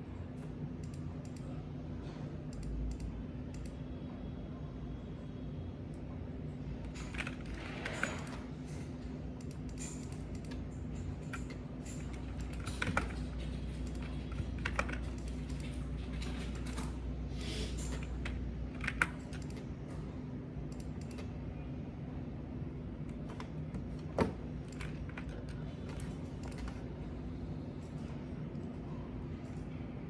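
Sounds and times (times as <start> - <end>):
steady low hum: 0.0 - 30.0
keyboard typing: 6.8 - 8.6, 9.3 - 20.0, 20.7 - 21.4, 23.0 - 27.2.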